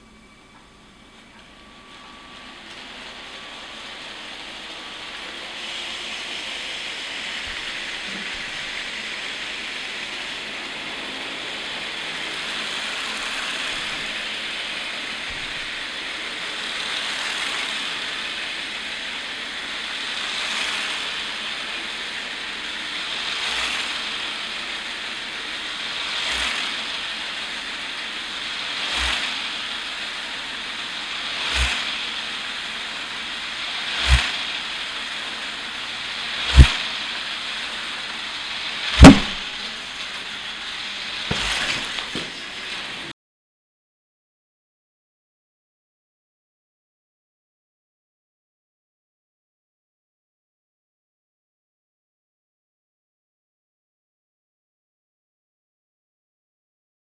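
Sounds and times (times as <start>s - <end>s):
electric motors whirring: 0.0s - 43.1s
low thumps: 36.5s - 36.8s, 39.0s - 39.7s.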